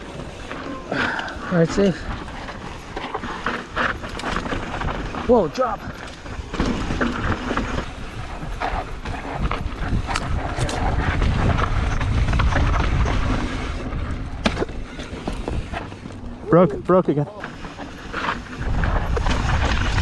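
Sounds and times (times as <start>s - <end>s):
bike rattling: 0.0s - 20.0s
bike knocking on bumps: 0.4s - 12.7s
wind buffeting microphone: 1.4s - 15.8s.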